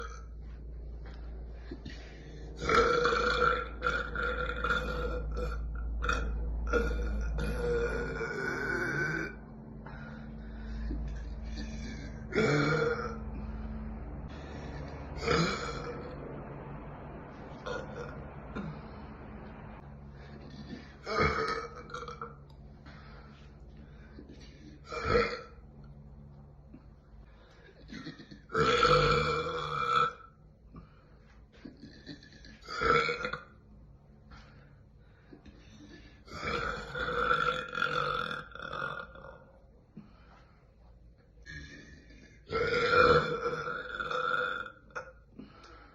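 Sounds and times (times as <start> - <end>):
woman burping: 2.6 - 9.4, 11.6 - 13.2, 15.2 - 16.0, 20.5 - 22.4, 24.8 - 25.6, 27.9 - 30.3, 36.3 - 39.4, 41.4 - 45.2.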